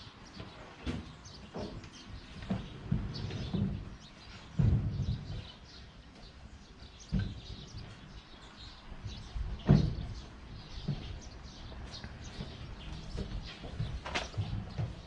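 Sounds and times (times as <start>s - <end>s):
birds chirping: 0.0s - 15.0s
thump: 9.6s - 10.2s.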